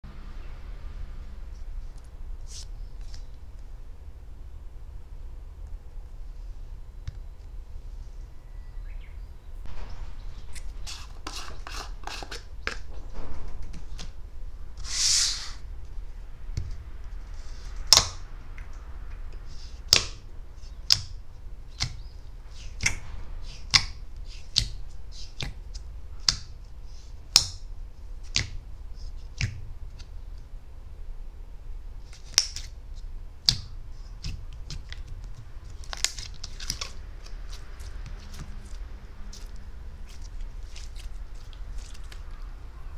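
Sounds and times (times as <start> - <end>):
low steady hum: 0.0 - 42.9
brief hiss: 14.8 - 15.6.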